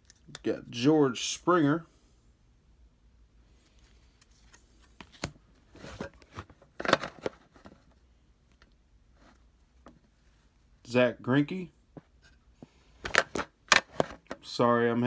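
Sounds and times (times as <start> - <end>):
cards rustling: 3.5 - 7.9.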